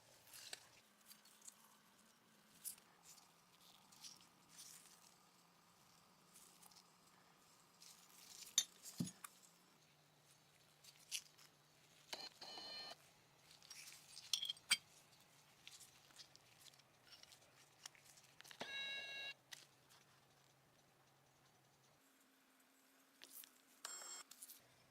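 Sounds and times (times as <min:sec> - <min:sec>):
metal parts clicking and clinking: 0:14.2 - 0:14.8.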